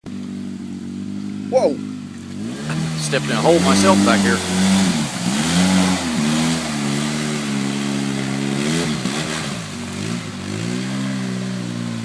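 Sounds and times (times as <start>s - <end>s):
side-by-side engine running under load: 0.0s - 12.0s
tires churning in mud: 0.1s - 12.0s.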